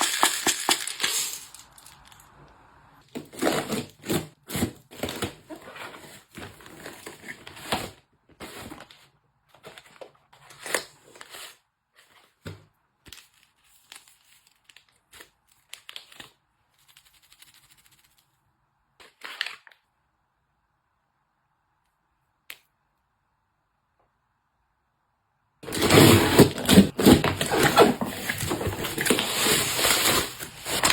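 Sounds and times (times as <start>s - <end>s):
packaging crinkling and rustling: 25.6s - 30.9s.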